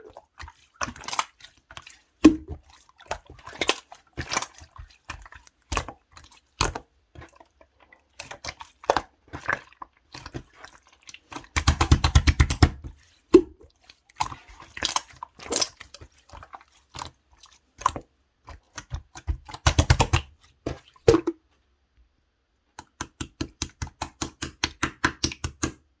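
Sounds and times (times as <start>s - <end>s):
slime squished with clicks and pops: 11.6s - 13.6s, 22.8s - 25.8s.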